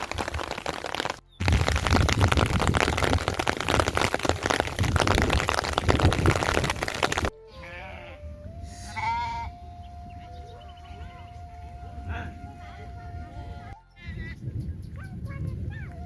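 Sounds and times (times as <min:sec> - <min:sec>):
heavy rain pouring: 0:00.0 - 0:07.3
animal bleating: 0:07.5 - 0:09.6.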